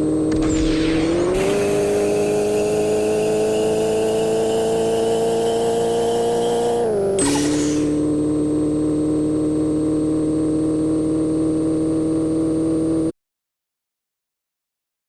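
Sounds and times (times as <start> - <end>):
car engine running: 0.0 - 13.1.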